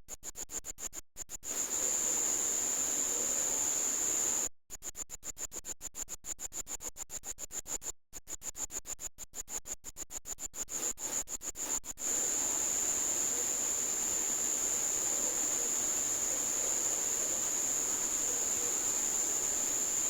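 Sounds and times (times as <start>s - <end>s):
faint hiss: 1.5s - 4.5s, 12.0s - 20.0s
high-pitched buzzing whine: 1.5s - 4.5s, 10.7s - 20.0s.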